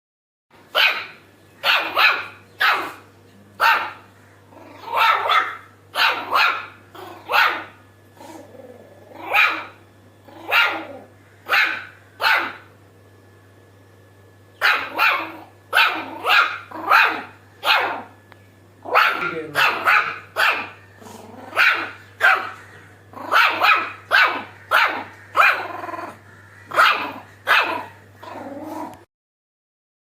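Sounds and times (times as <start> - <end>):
puppy barking: 0.7 - 3.0, 3.6 - 8.4, 9.2 - 9.8, 10.4 - 12.7, 14.6 - 18.2, 18.8 - 28.5.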